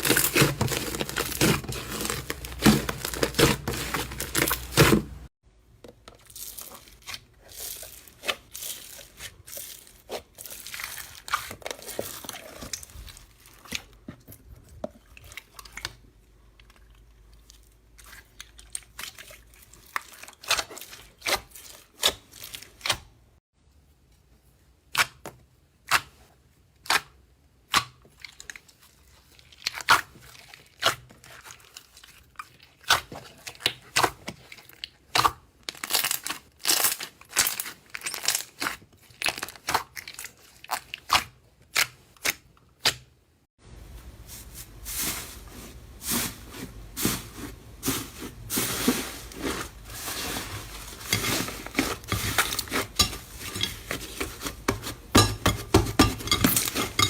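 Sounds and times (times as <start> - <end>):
slime crackling and crunching: 0.0 - 5.3, 6.2 - 14.0, 28.3 - 42.4.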